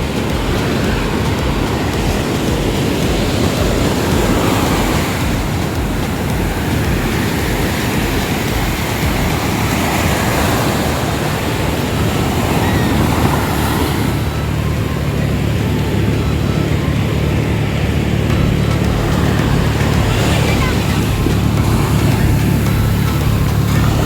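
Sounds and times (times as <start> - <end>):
ocean surf washing ashore: 0.0 - 24.0
wind rumbling on microphone: 0.0 - 24.0.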